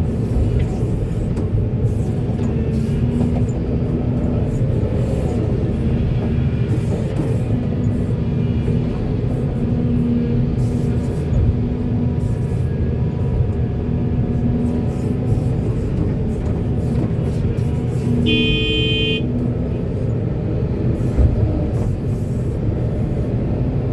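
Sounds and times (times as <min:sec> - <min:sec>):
heavy diesel machinery running: 0:00.0 - 0:23.9
vehicle horn: 0:18.2 - 0:19.5.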